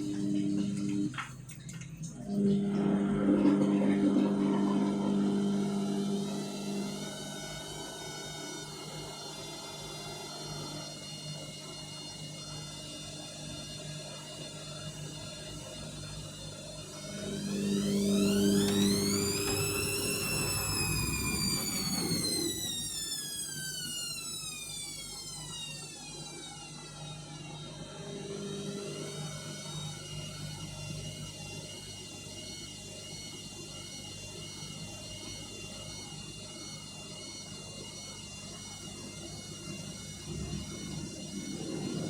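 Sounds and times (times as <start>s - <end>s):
washing machine motor whine: 0.0s - 42.0s
low hum: 16.9s - 22.5s.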